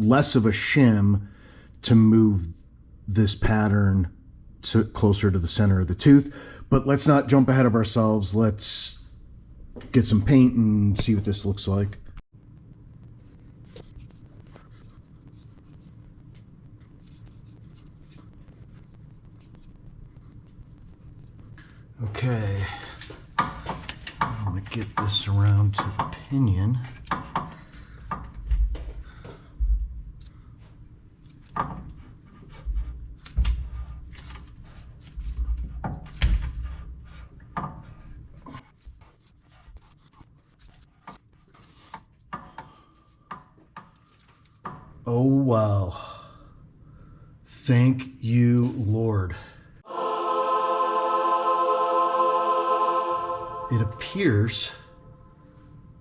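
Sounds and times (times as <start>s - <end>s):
small brush scratching: 13.2s - 21.6s.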